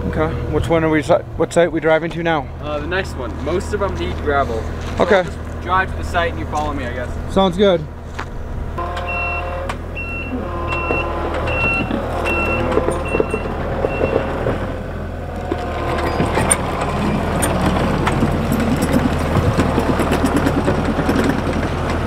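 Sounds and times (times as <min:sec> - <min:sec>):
engine running: 0:00.0 - 0:22.0
backup alarm beeping: 0:08.8 - 0:14.5
knocks and rattles: 0:08.8 - 0:22.0.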